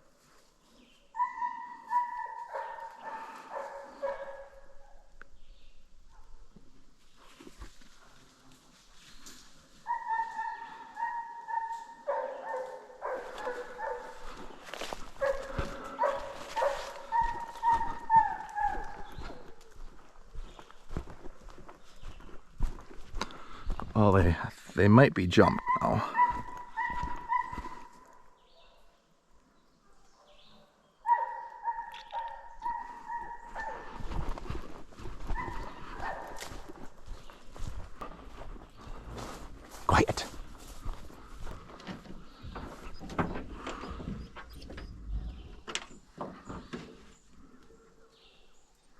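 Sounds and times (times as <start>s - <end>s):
hounds baying: 1.1s - 5.1s, 9.7s - 22.2s, 25.4s - 28.8s, 31.0s - 39.5s
crunching shuffling noise: 12.5s - 28.2s, 32.1s - 44.0s.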